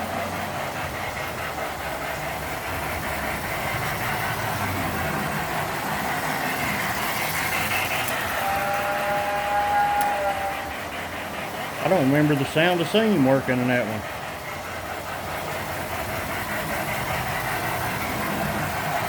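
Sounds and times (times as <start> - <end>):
model steam locomotive chuffing: 0.0 - 19.0
two-note train whistle: 7.9 - 10.8.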